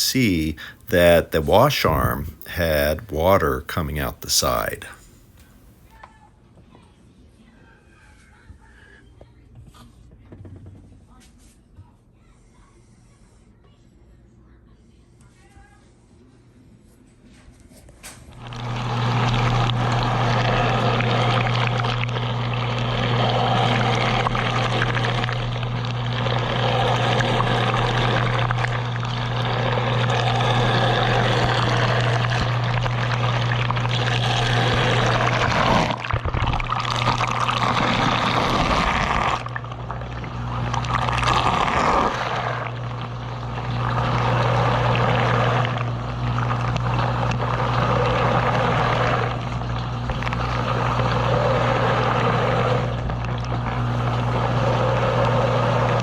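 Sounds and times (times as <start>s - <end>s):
dishwasher pump motor hum: 18.3s - 56.0s.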